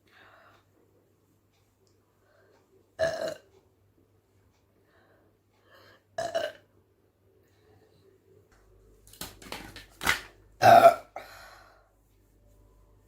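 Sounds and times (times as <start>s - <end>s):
person burping: 3.0s - 3.4s, 6.2s - 6.6s, 10.6s - 11.3s.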